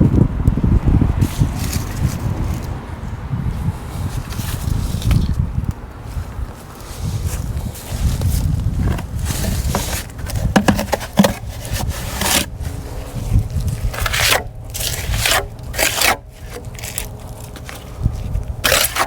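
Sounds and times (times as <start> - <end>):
hand tool scraping cement: 6.8 - 19.0.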